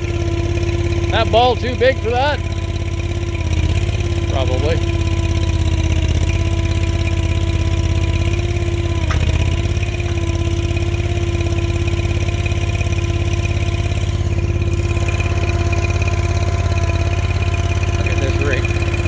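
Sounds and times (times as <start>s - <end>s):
skid steer engine running: 0.0s - 19.0s.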